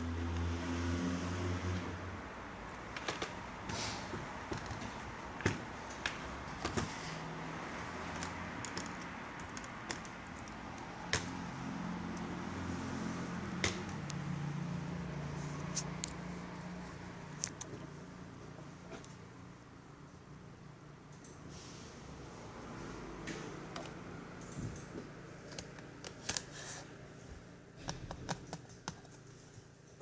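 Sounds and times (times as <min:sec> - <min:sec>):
small plastic parts clicking: 0:08.1 - 0:11.3.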